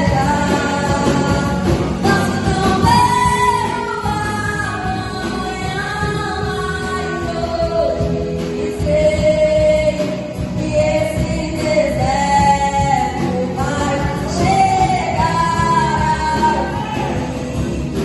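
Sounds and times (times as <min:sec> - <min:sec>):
band accompaniment: 0:00.0 - 0:18.0
woman singing: 0:00.0 - 0:18.0.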